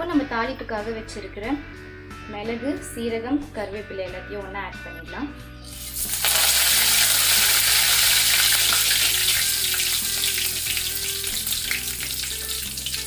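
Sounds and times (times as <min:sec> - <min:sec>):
spices sizzling in hot oil: 0:05.6 - 0:13.0.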